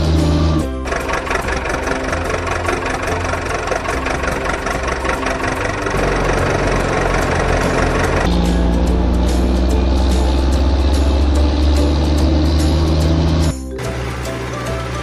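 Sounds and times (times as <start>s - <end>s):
music: 0.0s - 15.0s
heavy vehicle engine idling: 0.1s - 12.0s.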